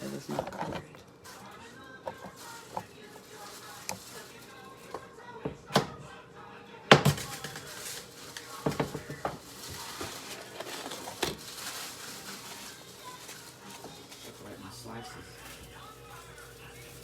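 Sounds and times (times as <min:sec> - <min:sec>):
utensils and dishes knocking: 0:06.9 - 0:07.6, 0:08.6 - 0:10.1.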